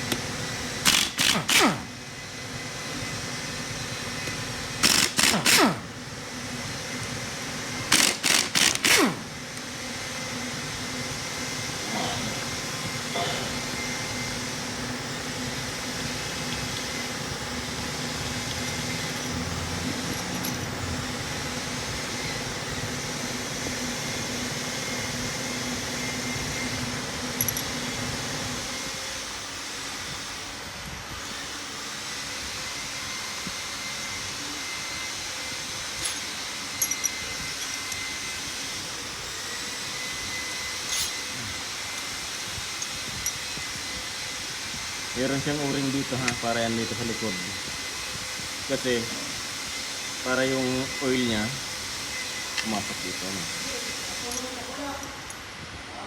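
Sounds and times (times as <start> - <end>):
machine whirring: 0.0 - 2.2, 4.2 - 6.0, 7.8 - 9.8.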